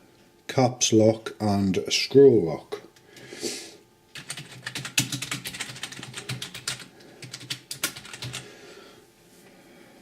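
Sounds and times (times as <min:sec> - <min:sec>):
keyboard keys clicking: 0:04.2 - 0:08.4.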